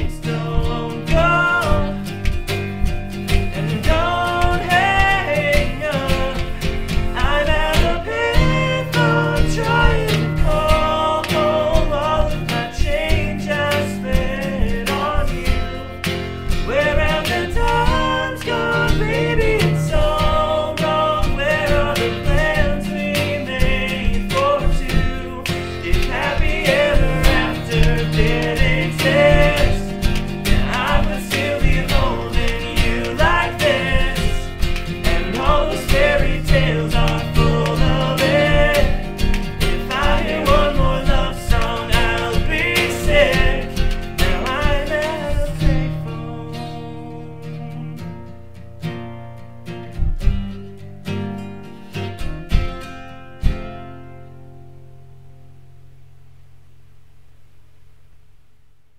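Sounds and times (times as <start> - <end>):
beat tapped on household objects: 0.0 - 46.0
layered vocal harmonies singing: 0.0 - 48.2
acoustic guitar: 0.0 - 58.5.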